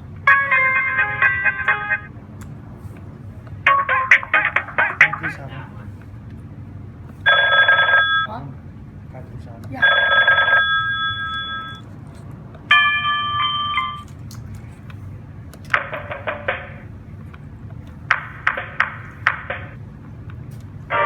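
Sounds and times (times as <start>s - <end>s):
phone ringtone tone: 0.2s - 2.2s, 3.7s - 5.4s, 7.3s - 8.3s, 9.8s - 11.8s, 12.7s - 14.0s.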